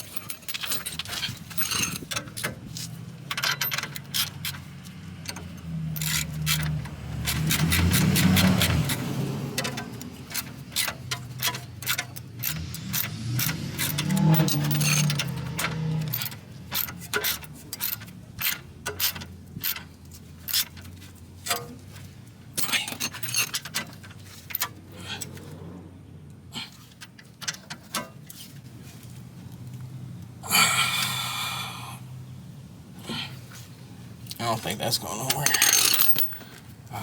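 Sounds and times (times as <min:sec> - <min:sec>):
ratchet clicking on bolts: 0:00.0 - 0:21.8, 0:22.6 - 0:25.4.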